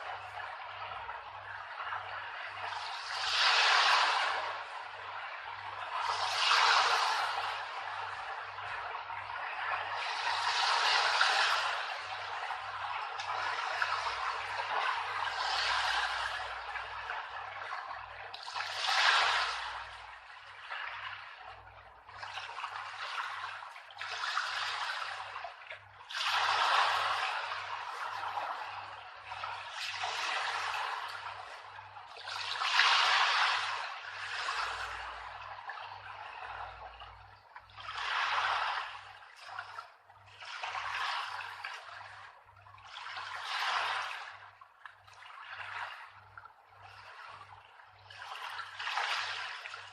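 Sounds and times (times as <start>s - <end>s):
rushing water: 17.8s - 35.2s.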